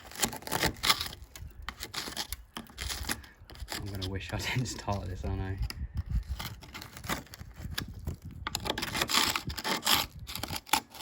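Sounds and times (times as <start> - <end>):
rubber door seal tearing: 0.0 - 4.0, 6.4 - 11.0
scraping and crunching rust: 0.0 - 11.0.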